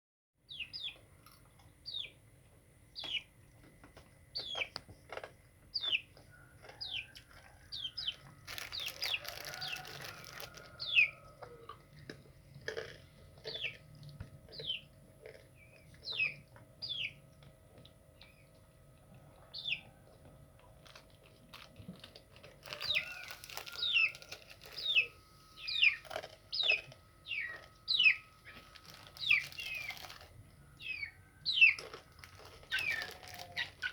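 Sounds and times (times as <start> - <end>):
small bird chirping: 0.4 - 2.3, 2.9 - 3.4, 4.3 - 4.8, 5.7 - 11.2, 13.4 - 17.2, 19.4 - 20.0, 22.7 - 33.9.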